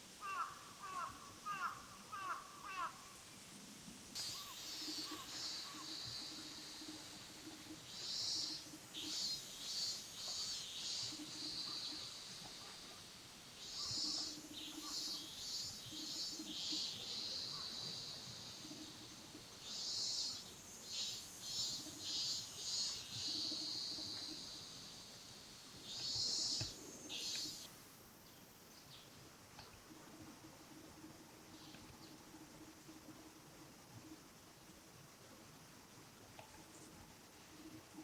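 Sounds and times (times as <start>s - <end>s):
small birds chirping: 4.2s - 29.8s.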